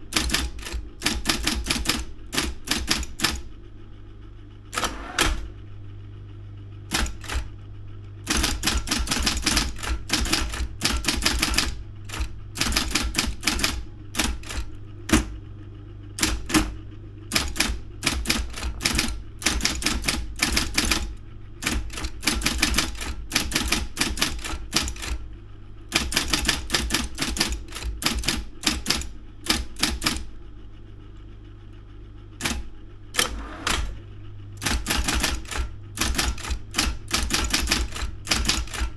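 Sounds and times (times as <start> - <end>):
typewriter motor hum: 0.0 - 3.9, 4.6 - 30.5, 32.4 - 38.9
typewriter key strikes: 0.1 - 3.4, 6.9 - 7.5, 8.3 - 15.4, 16.2 - 25.2, 25.9 - 30.2, 34.6 - 38.9.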